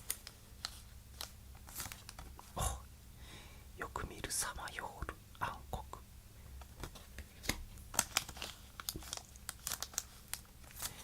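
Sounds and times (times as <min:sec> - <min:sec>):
cards and packaging crinkling: 0:00.0 - 0:02.6, 0:06.6 - 0:11.0.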